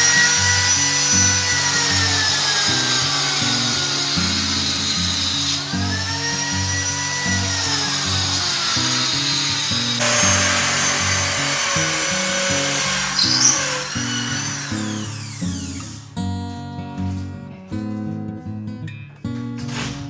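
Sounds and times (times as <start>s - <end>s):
power tool whining: 0.0s - 16.2s.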